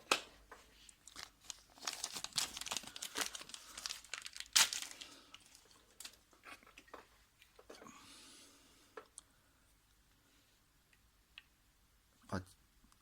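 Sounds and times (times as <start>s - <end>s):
plastic packaging crinkling: 0.8s - 7.0s.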